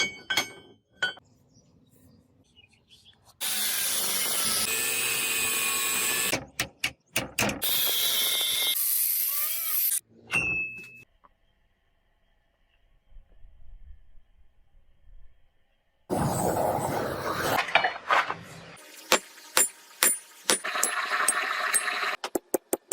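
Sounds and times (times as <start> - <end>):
power tool running: 3.4 - 6.3.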